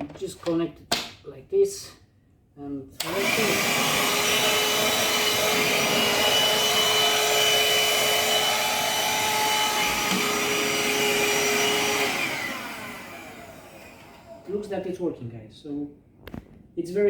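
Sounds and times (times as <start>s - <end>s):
handheld vacuum cleaner running: 3.0s - 14.5s
vacuum motor spinning down: 3.0s - 14.5s.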